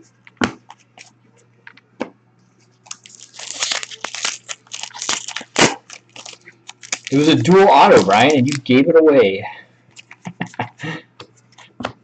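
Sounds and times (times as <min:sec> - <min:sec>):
foil wrapper crinkling: 0:02.8 - 0:08.8.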